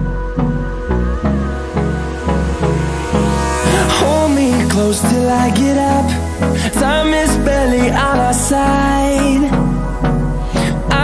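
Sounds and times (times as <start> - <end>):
instrumental pop music: 0.0 - 11.0.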